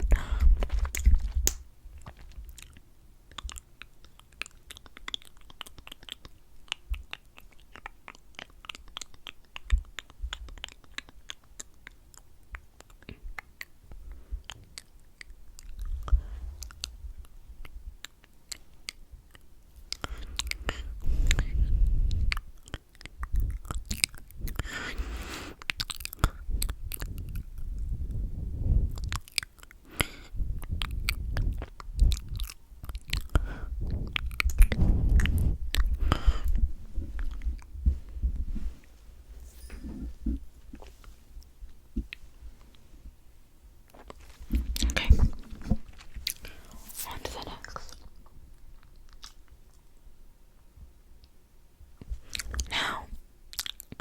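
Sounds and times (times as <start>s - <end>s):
handling rustles and thumps: 36.5s - 43.1s, 44.0s - 47.1s.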